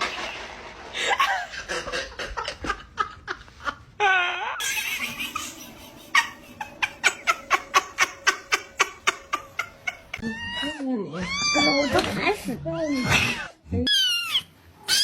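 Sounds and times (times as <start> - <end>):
person laughing: 4.6 - 10.3.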